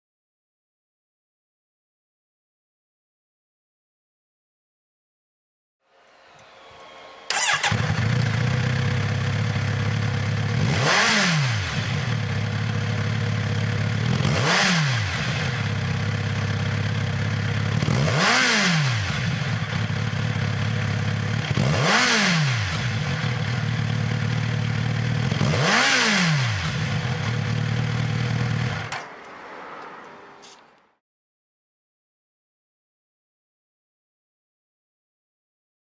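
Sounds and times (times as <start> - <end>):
motorcycle engine revving: 7.3 - 29.0.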